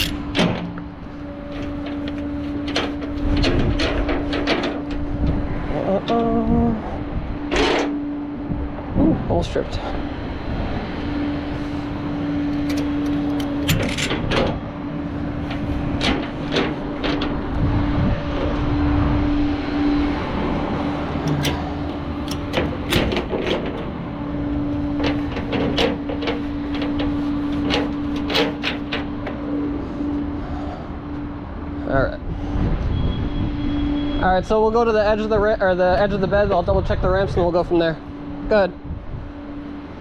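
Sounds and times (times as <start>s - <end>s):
metallic clanks and knocks: 0.0s - 5.1s, 12.6s - 14.7s, 15.4s - 17.6s, 21.2s - 24.1s, 24.8s - 29.5s
vehicle engine humming: 0.0s - 40.0s.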